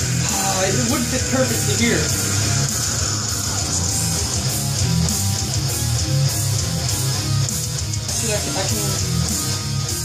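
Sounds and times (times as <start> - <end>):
heavy metal music: 0.0 - 10.0.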